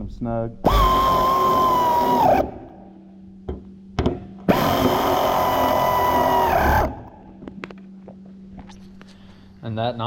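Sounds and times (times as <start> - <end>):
air wrench spinning: 0.6 - 2.7, 4.5 - 7.1.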